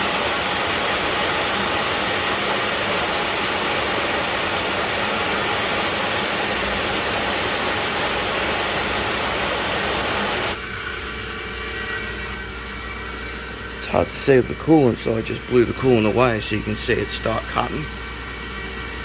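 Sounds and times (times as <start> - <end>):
compressed air hissing: 0.0 - 10.6
machine running hum: 0.0 - 19.0.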